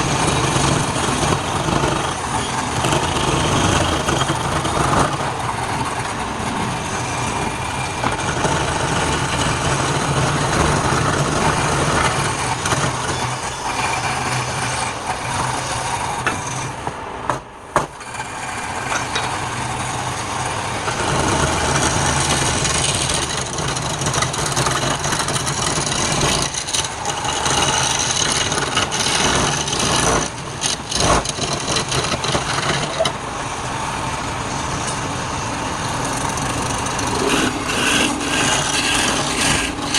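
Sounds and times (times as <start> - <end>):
lathe motor hum: 0.0 - 39.9
tool scraping spinning wood: 0.0 - 39.9
sharp knocks: 16.2 - 18.1.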